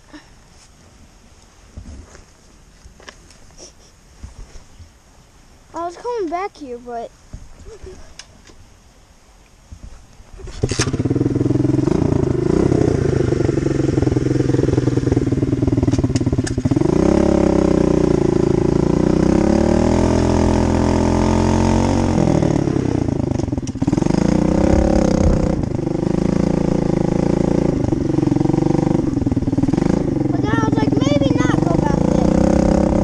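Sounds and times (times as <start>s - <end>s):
dirt bike engine revving: 10.4s - 33.0s.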